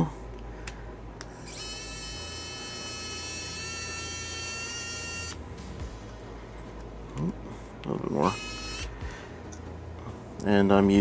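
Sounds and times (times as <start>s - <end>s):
electric screwdriver whirring: 1.3s - 5.6s, 8.2s - 9.1s.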